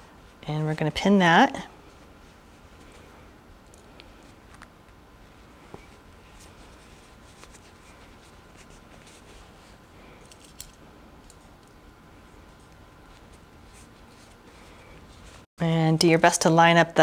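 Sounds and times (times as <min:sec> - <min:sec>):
low room hum: 0:00.0 - 0:17.0
fabric handling: 0:01.8 - 0:10.6, 0:11.2 - 0:15.5.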